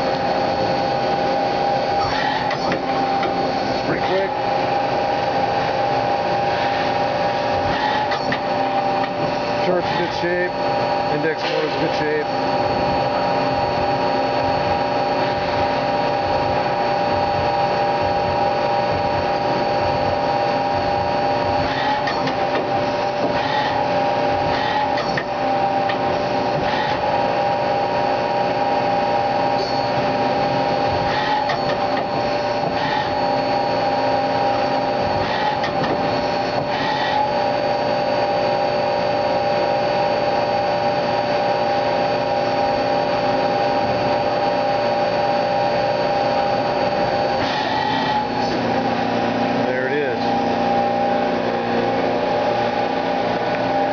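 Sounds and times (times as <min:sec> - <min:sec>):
lathe machine whine: 0:00.0 - 0:53.9.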